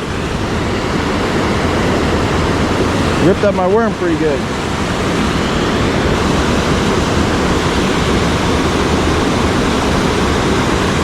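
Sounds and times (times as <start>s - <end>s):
waterfall and rushing water roar: 0.0s - 11.0s.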